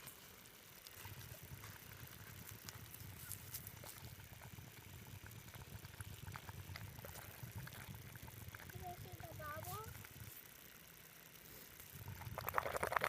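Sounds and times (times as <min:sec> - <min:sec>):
faint clicks: 0:00.0 - 0:13.0
gurgling and bubbling from ground: 0:00.8 - 0:10.4, 0:11.8 - 0:13.0.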